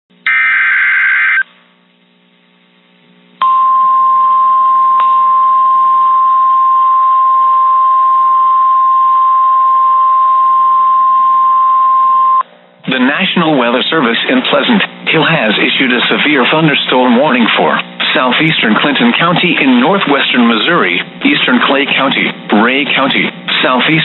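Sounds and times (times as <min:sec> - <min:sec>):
steady alarm tone: 0:00.2 - 0:01.5
warbling data tones: 0:00.2 - 0:01.5.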